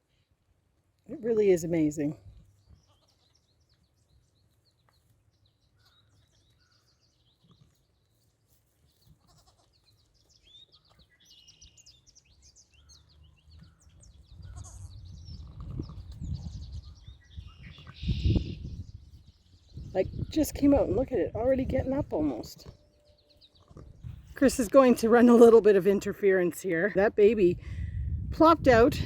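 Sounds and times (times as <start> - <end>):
small birds chirping: 1.1 - 27.3
ewe calling softly: 9.1 - 9.9
faint lamb bleats: 9.2 - 9.9, 14.4 - 15.0.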